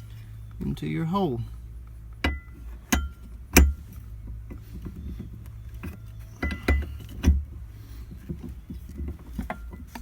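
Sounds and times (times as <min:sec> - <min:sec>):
low steady hum: 0:00.0 - 0:10.0
sharp metal clanks: 0:02.2 - 0:03.8.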